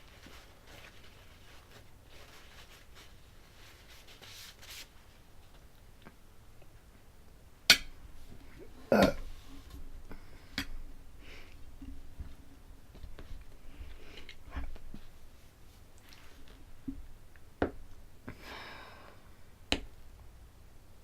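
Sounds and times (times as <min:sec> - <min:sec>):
short burp: 0:08.9 - 0:09.3.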